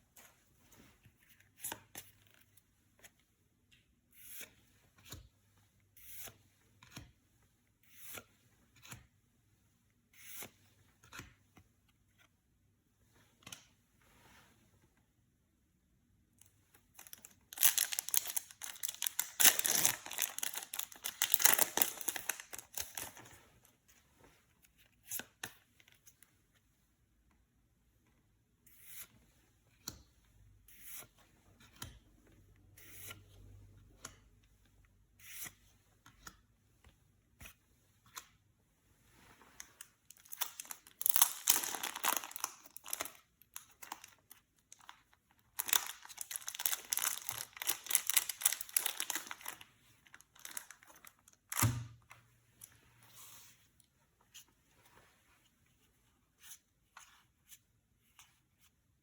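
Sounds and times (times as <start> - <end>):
wrappers tearing and crinkling: 17.0 - 23.2, 40.1 - 43.2, 45.6 - 51.6.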